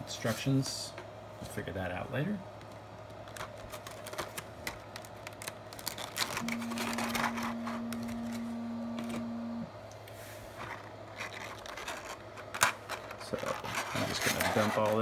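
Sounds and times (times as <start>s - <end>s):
steady low hum: 0.0s - 15.0s
plastic and cardboard rustling: 2.6s - 9.4s, 10.0s - 15.0s.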